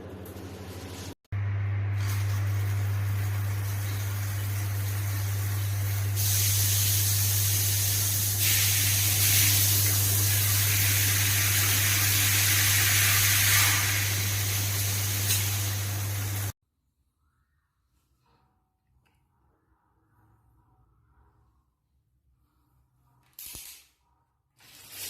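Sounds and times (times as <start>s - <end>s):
water spraying and hissing: 1.9s - 16.6s.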